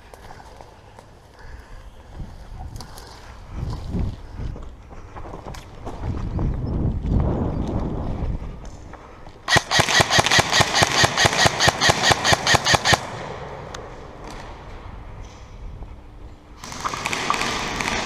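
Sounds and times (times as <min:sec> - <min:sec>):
airsoft gun rapid shots: 0:09.5 - 0:13.2, 0:16.6 - 0:18.0.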